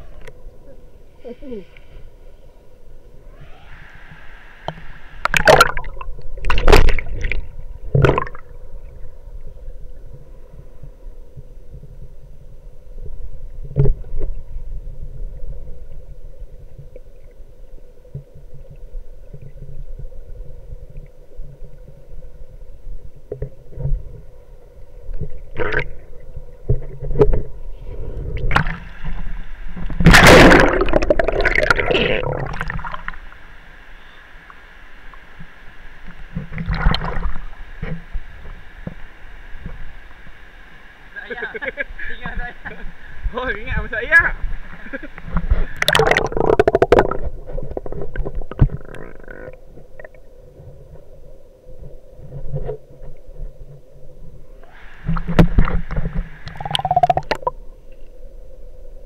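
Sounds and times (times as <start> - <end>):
muffled waterfall rumble: 0.0 - 59.0
water splashing: 4.7 - 8.6, 25.2 - 27.4, 28.3 - 33.4, 36.4 - 37.5, 45.4 - 49.3, 55.0 - 57.6.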